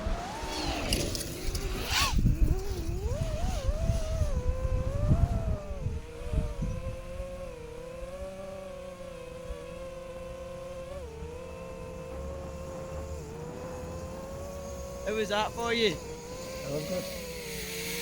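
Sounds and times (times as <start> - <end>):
wind buffeting: 0.0 - 8.4
drone propellers whining: 0.0 - 18.0.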